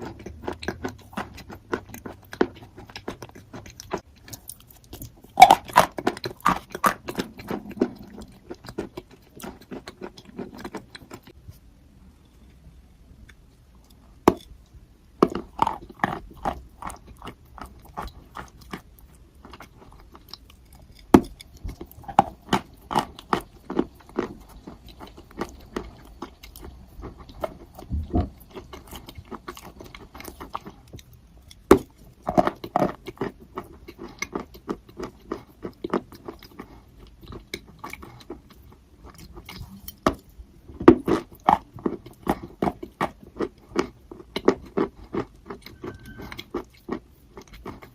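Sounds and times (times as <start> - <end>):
chalk crunching being chewed: 15.3 - 40.4, 41.0 - 47.9.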